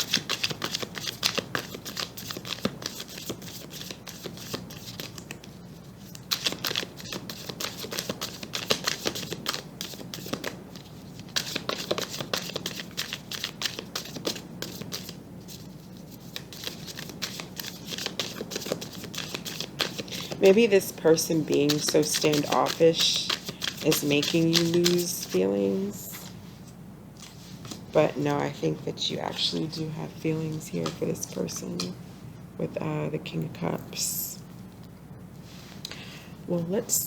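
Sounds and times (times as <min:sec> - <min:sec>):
cards being shuffled: 0:00.0 - 0:25.4, 0:27.2 - 0:28.0.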